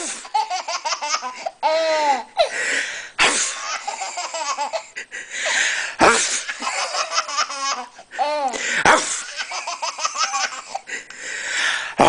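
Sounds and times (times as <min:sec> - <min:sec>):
person fake sneezing: 0:03.2 - 0:03.7, 0:06.0 - 0:06.6, 0:08.5 - 0:09.4.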